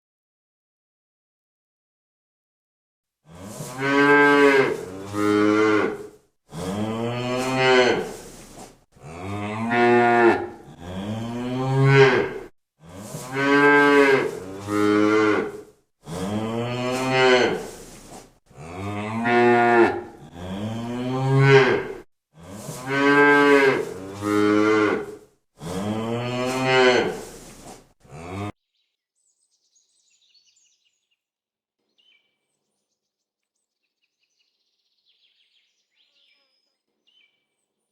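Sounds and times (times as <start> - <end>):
cow mooing: 3.3 - 8.2, 9.0 - 17.8, 18.5 - 27.3, 28.1 - 28.5.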